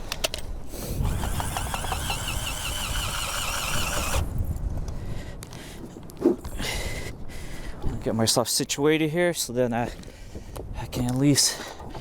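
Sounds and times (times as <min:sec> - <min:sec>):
wind buffeting microphone: 0:00.0 - 0:12.0
power drill whining: 0:01.0 - 0:04.3.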